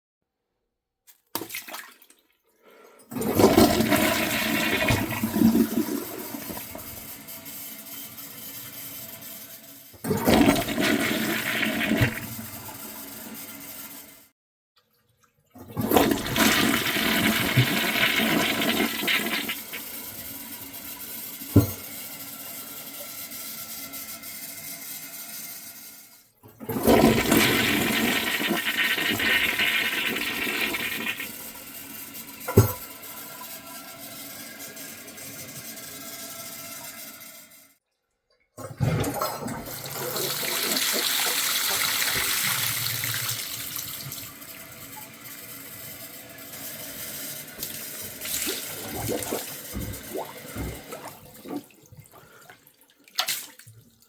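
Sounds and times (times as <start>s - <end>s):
toilet flushing: 2.6s - 9.0s, 10.0s - 14.2s, 15.5s - 37.7s, 38.6s - 54.0s
water refilling: 3.1s - 7.0s, 10.0s - 12.5s, 15.2s - 19.9s, 26.6s - 31.7s, 38.6s - 44.3s, 47.6s - 54.0s.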